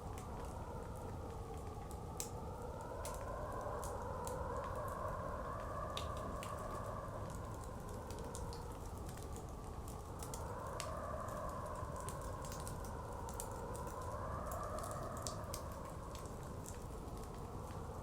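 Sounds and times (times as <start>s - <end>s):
blizzard wind: 0.0s - 18.0s
wood fire crackling and popping: 5.5s - 18.0s.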